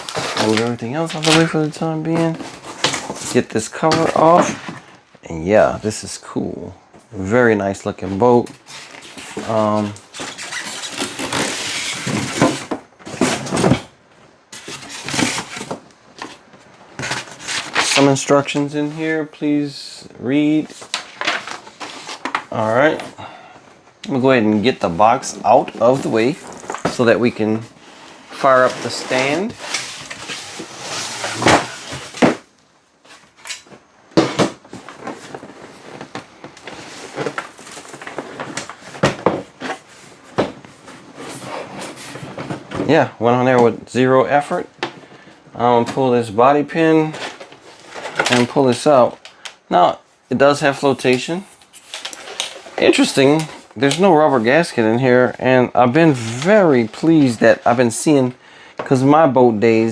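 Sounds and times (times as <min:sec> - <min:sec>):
packaging rustling and scraping: 0:00.0 - 0:05.1, 0:08.0 - 0:19.3, 0:20.3 - 0:23.2, 0:24.2 - 0:43.6, 0:44.3 - 0:49.5, 0:50.6 - 0:58.3.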